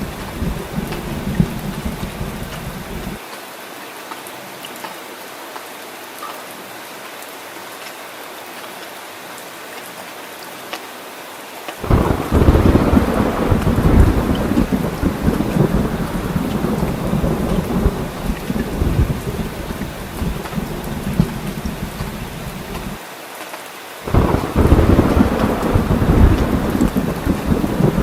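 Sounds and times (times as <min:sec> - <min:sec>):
thunder rumbling: 0:00.0 - 0:03.2, 0:11.8 - 0:23.0, 0:24.1 - 0:28.0
heavy rain: 0:00.0 - 0:28.0.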